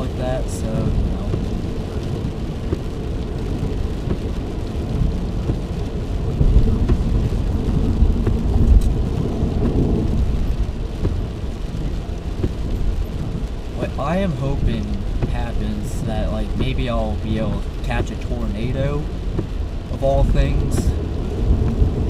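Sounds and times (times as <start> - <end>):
car engine and road rumble: 0.0 - 22.0.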